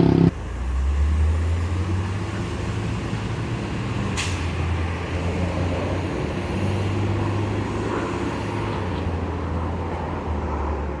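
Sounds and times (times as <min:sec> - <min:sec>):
truck engine droning: 0:00.0 - 0:00.7.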